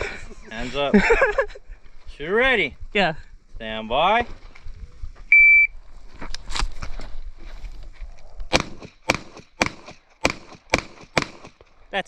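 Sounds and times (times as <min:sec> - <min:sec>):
shuffling: 0:03.4 - 0:08.4
handgun shots: 0:08.5 - 0:11.6.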